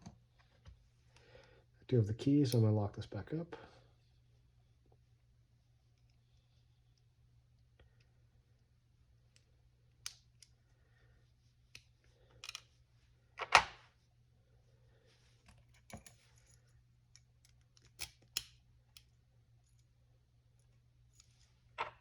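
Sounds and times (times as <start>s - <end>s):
padlock and key clicking: 17.4s - 19.1s.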